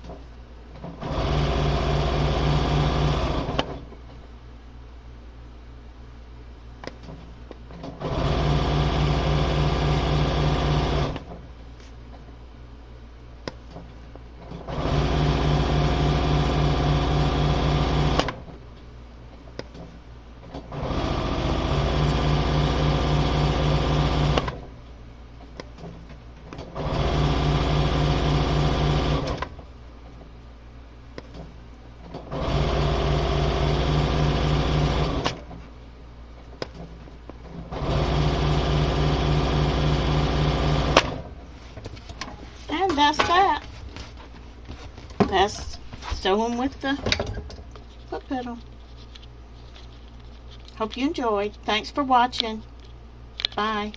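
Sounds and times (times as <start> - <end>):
electric sewing machine running: 1.0 - 3.6, 8.0 - 11.2, 14.7 - 18.3, 20.7 - 24.6, 26.8 - 29.4, 32.3 - 35.4, 37.7 - 41.2.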